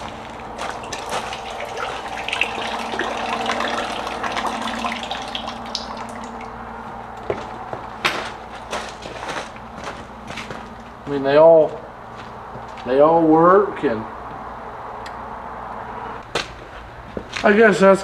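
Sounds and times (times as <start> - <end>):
water running and splashing: 0.0 - 9.6.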